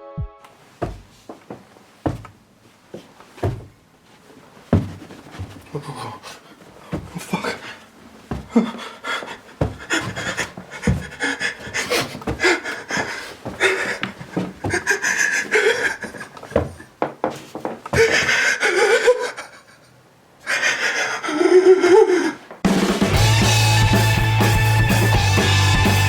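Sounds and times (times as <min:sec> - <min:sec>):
footsteps on stairs: 0:00.6 - 0:05.9, 0:06.6 - 0:18.4
man panting in panic: 0:05.7 - 0:16.8, 0:18.0 - 0:19.8, 0:20.5 - 0:22.4
man whimpering and crying: 0:18.0 - 0:19.8, 0:20.6 - 0:22.4.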